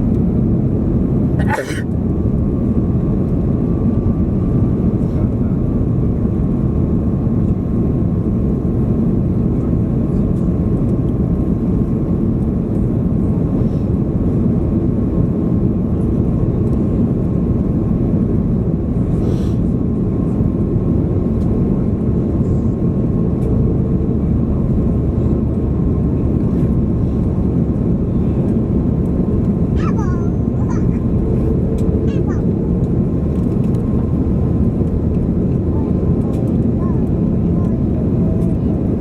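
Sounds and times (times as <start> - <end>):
airliner engine rumble: 0.0 - 39.0.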